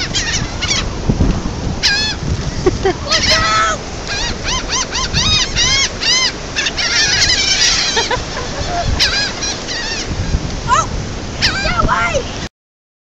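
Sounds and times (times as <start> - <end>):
seagulls squawking: 0.0 - 1.0, 1.7 - 11.9
steady low rumble: 0.0 - 4.4.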